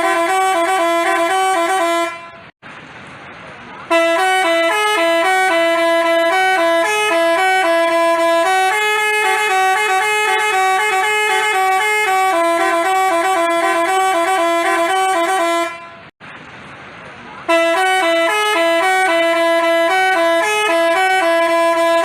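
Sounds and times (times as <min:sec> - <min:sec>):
multi-tone bus horn tune: 0:00.0 - 0:02.6, 0:03.8 - 0:16.2, 0:17.5 - 0:22.0.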